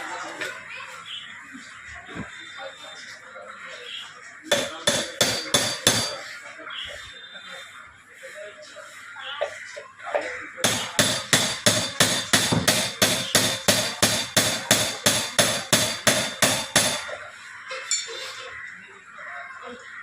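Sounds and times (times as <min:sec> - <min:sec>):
rapid ringing hammer blows: 0:04.5 - 0:06.2, 0:10.6 - 0:17.1.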